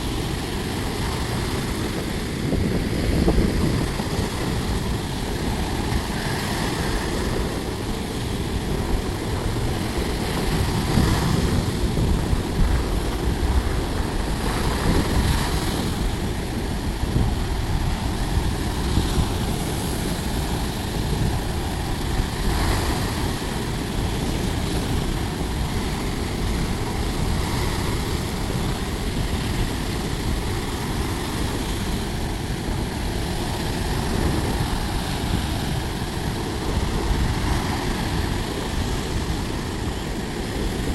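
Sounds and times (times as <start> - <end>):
sea waves breaking on beach: 0.0 - 40.9.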